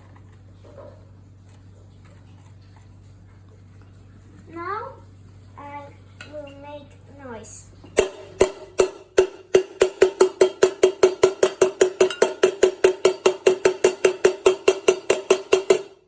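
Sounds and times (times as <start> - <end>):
banging on a hollow object: 8.0 - 16.0.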